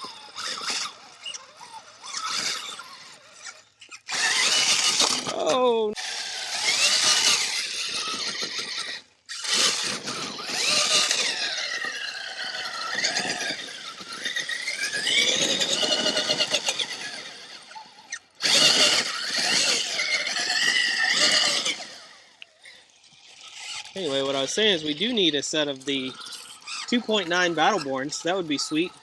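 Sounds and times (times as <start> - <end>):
electric motor whining: 0.0 - 29.0.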